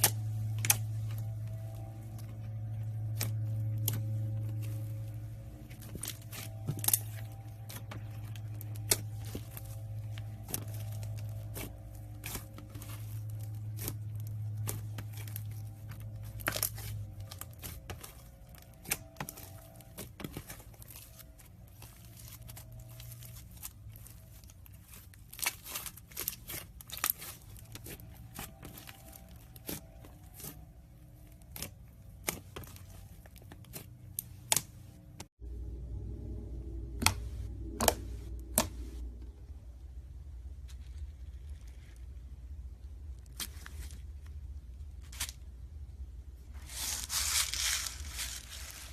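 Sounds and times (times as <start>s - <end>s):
slime crackling and popping: 0.0s - 30.7s
low hum: 0.0s - 48.9s.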